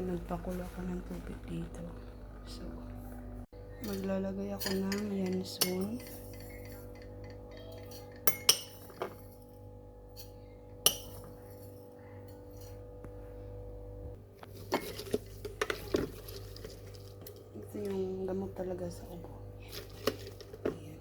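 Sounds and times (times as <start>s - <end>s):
low hum: 0.0s - 20.6s
kitchenware clinking: 3.8s - 12.8s, 14.5s - 18.0s, 19.7s - 20.9s.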